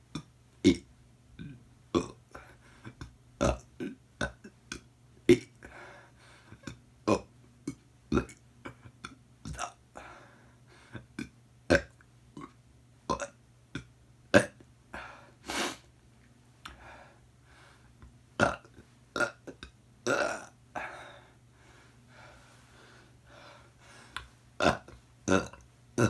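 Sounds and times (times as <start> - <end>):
person burping: 0.2 - 2.2, 3.4 - 5.6, 6.6 - 7.3, 11.1 - 14.6, 18.4 - 20.6, 24.6 - 26.0.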